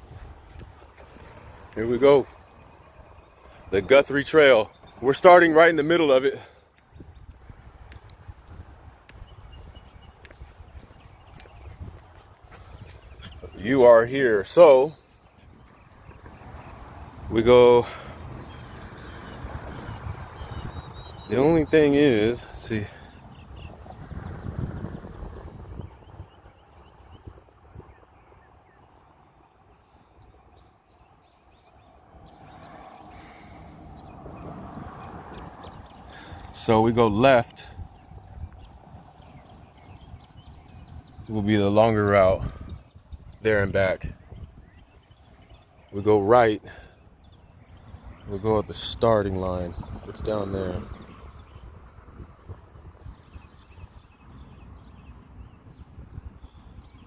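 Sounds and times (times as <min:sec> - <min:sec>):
footsteps: 0:00.0 - 0:13.8
insects droning: 0:00.0 - 0:57.0.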